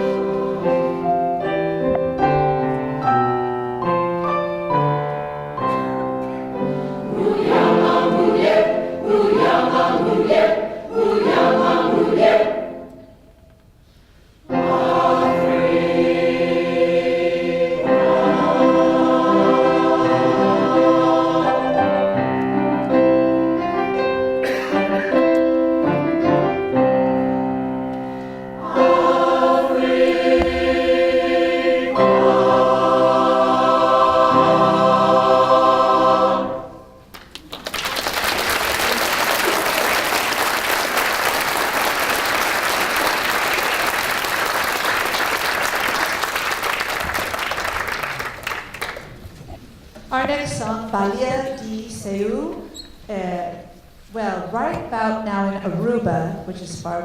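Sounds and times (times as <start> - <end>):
choir singing in harmony: 0.0 - 2.6, 6.5 - 13.3, 14.4 - 23.5, 28.1 - 37.1.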